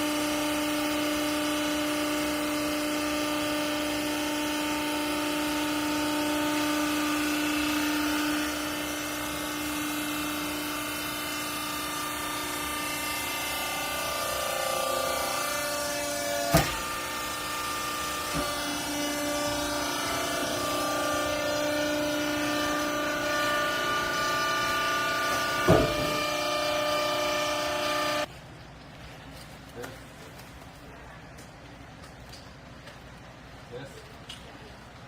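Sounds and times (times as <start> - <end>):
hydraulic power unit humming: 0.0 - 28.3
sharp knock: 25.6 - 26.2.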